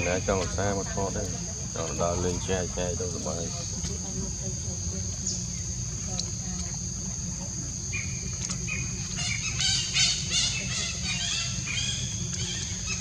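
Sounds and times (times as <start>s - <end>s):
steady high drone: 0.0s - 6.2s.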